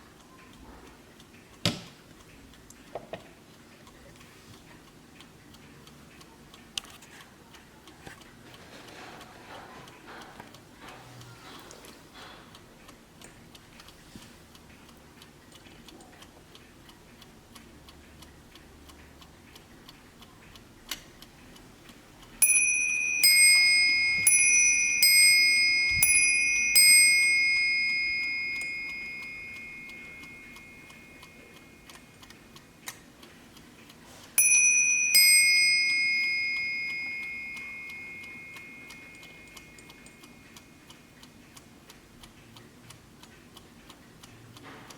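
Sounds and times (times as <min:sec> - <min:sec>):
clock ticking: 0:00.0 - 0:44.9
clock bells striking ding-dong: 0:22.4 - 0:31.8, 0:34.4 - 0:40.5.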